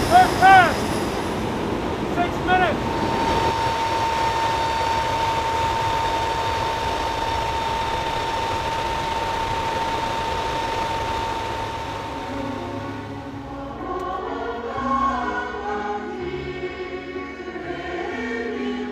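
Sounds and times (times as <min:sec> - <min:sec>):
aircraft engine drone in cabin: 0:00.0 - 0:13.6.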